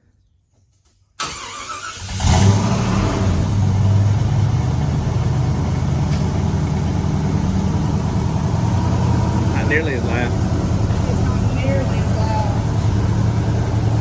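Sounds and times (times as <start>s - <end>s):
engine starter cranking: 1.2s - 3.4s
car engine idling: 1.3s - 14.0s.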